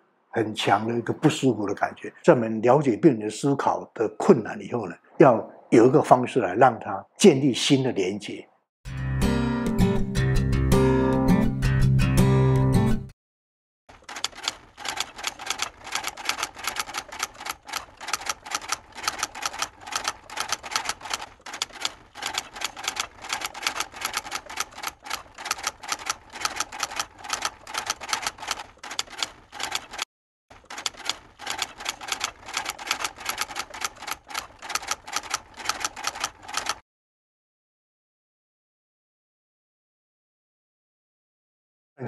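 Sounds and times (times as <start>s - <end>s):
rapid typing on keys: 13.9s - 36.8s.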